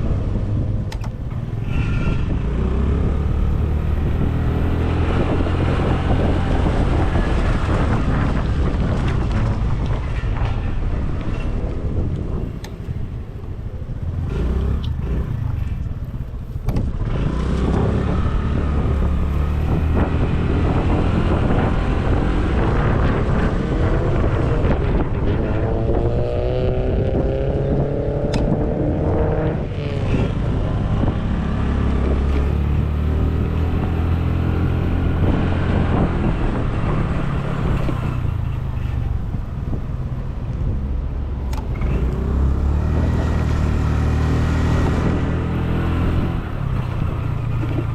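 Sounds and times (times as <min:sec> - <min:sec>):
road and wind noise: 0:00.0 - 0:47.9.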